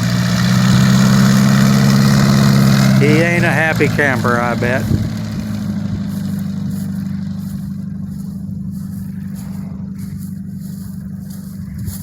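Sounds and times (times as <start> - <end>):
light aircraft piston engine running: 0.0 - 12.0.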